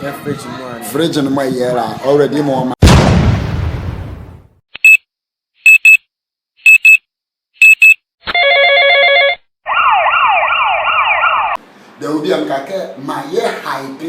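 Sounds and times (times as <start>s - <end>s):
high electronic beeps: 7.6s - 8.0s
siren sweeping down: 9.6s - 11.6s.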